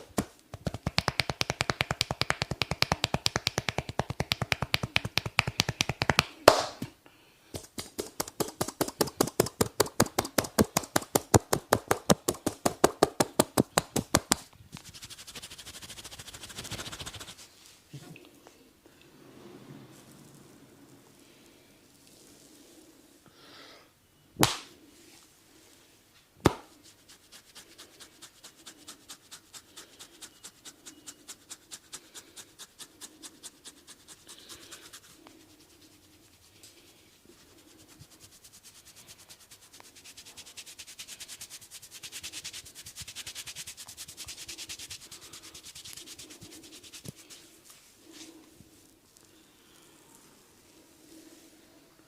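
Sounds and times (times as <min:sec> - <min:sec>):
hands rubbing hair: 0:00.0 - 0:06.8, 0:07.6 - 0:17.8, 0:26.4 - 0:49.4.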